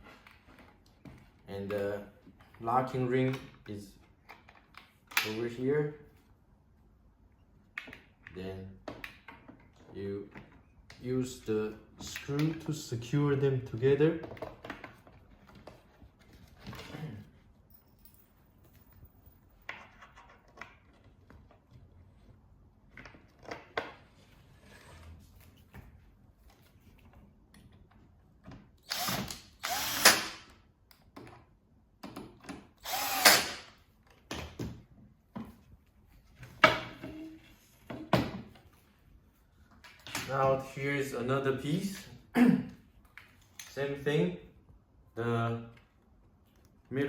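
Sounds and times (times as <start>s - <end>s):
cordless drill driving screws: 28.8s - 30.5s, 32.8s - 33.8s.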